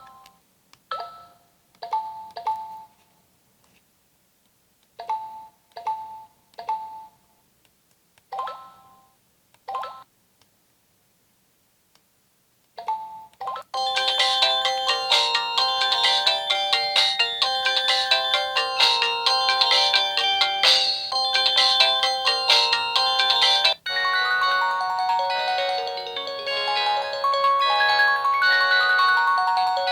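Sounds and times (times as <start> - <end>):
polyphonic phone ringtone melody: 13.8 - 29.9.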